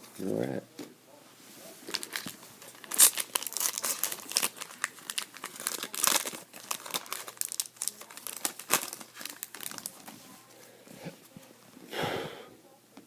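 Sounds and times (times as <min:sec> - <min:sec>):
cards and wrapper crinkling: 0:01.8 - 0:10.2.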